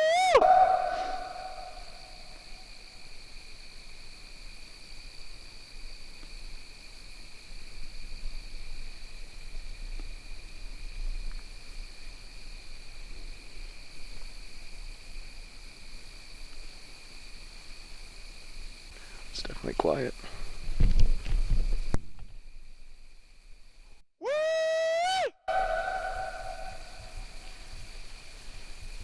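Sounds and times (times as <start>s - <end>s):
night insects chirring: 0.0s - 29.0s.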